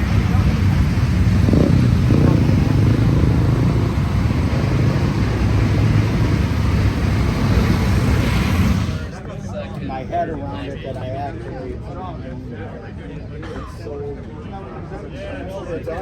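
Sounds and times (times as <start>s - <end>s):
race car engine rumbling: 0.0s - 9.3s.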